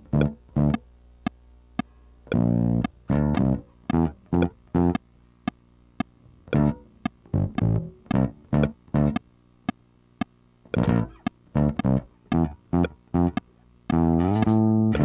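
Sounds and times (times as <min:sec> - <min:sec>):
bass and guitar clipped notes: 0:00.0 - 0:00.9, 0:02.3 - 0:05.1, 0:06.3 - 0:09.3, 0:10.7 - 0:15.0
sharp click keeping time: 0:00.0 - 0:15.0.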